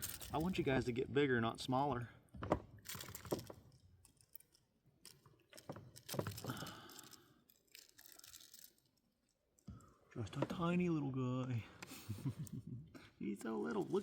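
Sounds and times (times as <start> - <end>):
fishing hooks clicking and rustling: 0.0 - 0.7, 2.8 - 9.7.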